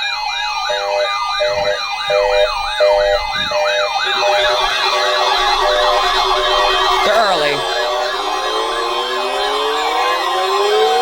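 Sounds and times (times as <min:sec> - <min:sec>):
electronic siren yelping: 0:00.0 - 0:11.0
second yelping siren: 0:01.2 - 0:08.2.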